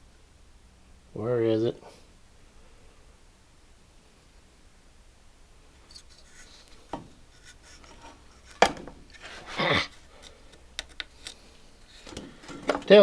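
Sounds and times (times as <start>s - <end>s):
rubbing and scraping: 5.9s - 10.4s.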